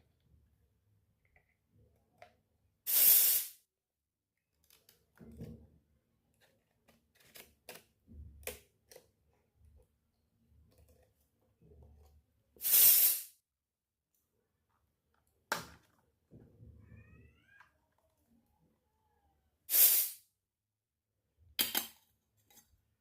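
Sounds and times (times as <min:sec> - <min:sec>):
short loud hiss: 0:02.9 - 0:03.6, 0:12.6 - 0:13.4, 0:19.7 - 0:20.2.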